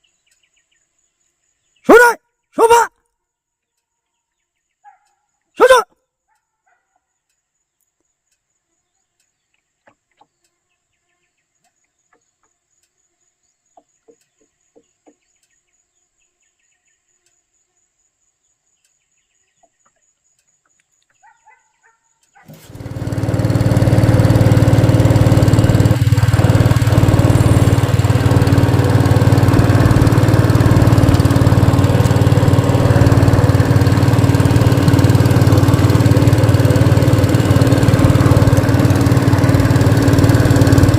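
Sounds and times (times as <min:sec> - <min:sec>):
engine running loud: 0:22.5 - 0:40.9.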